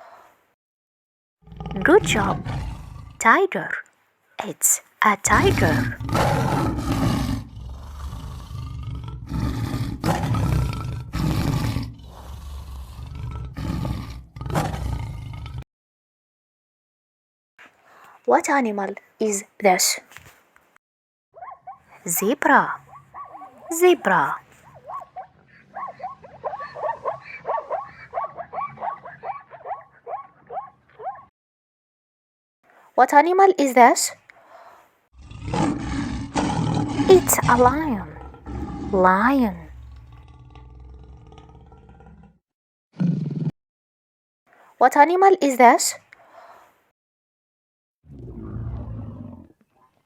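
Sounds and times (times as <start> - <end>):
tiger roaring and growling: 1.4 - 3.4, 5.3 - 15.6, 22.4 - 31.1, 35.2 - 42.4, 43.0 - 43.5, 48.1 - 49.6
zebra barking calls: 21.4 - 22.0, 22.7 - 31.3.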